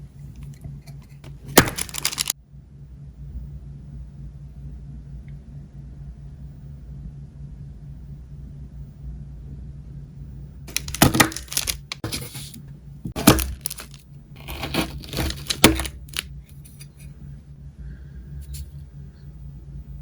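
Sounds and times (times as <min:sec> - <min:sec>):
steady low hum: 0:00.0 - 0:20.0
chocolate bar crunching: 0:01.3 - 0:02.3, 0:10.7 - 0:16.9.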